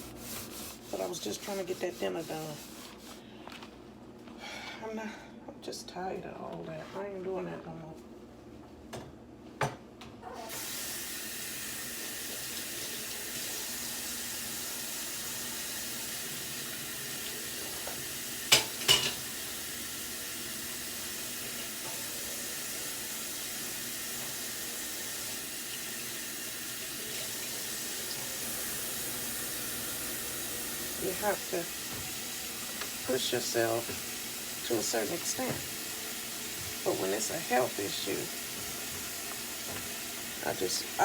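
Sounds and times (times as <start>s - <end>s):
tap running into sink: 25.7s - 40.4s.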